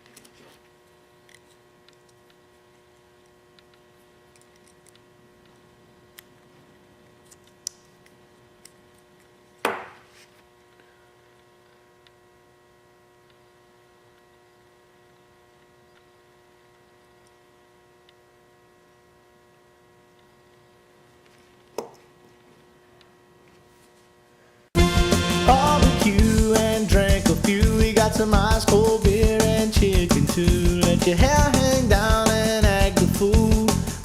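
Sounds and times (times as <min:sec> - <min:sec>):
low electrical hum: 0:00.0 - 0:34.0.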